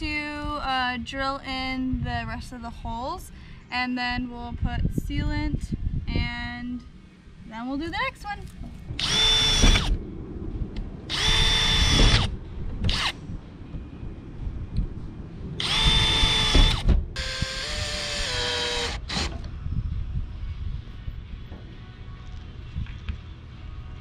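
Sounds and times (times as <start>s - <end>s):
power drill whining: 9.0s - 10.0s, 11.1s - 12.3s, 15.6s - 19.4s.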